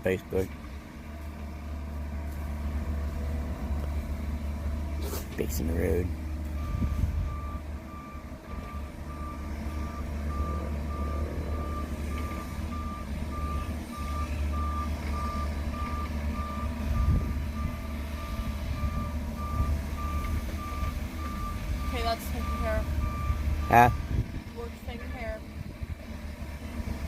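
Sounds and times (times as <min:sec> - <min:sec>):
low diesel engine rumble: 0:00.0 - 0:27.0
backup alarm beeping: 0:06.6 - 0:24.1.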